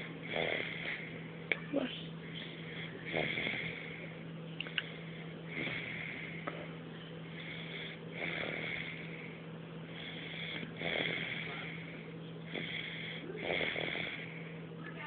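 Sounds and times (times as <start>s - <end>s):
person snoring: 0.0s - 1.2s, 2.7s - 4.1s, 5.5s - 6.5s, 7.3s - 9.4s, 10.0s - 14.5s.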